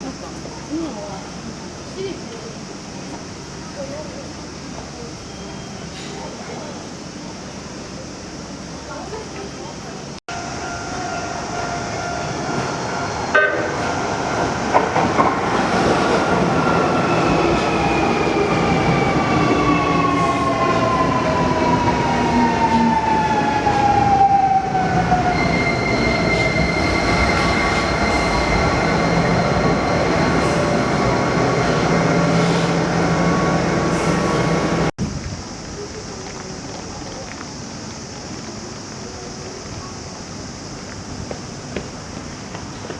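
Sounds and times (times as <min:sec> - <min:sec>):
crossing alarm tones: 0:10.3 - 0:34.9
train motor whine: 0:10.3 - 0:34.9
train wheels clattering on rails: 0:12.2 - 0:17.8.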